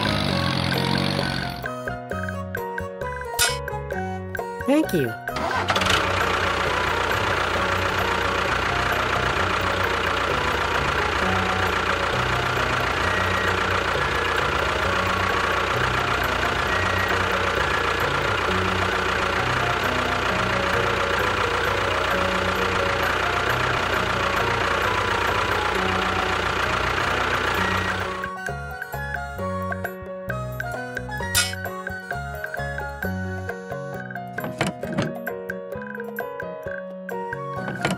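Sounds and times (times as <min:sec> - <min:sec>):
small engine running with knocking: 0:00.0 - 0:01.8, 0:05.3 - 0:30.0.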